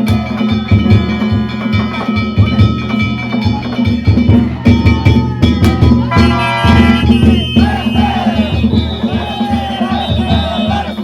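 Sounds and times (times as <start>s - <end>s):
large taiko drum beating: 0.0s - 11.0s
voices calling out: 3.4s - 11.0s.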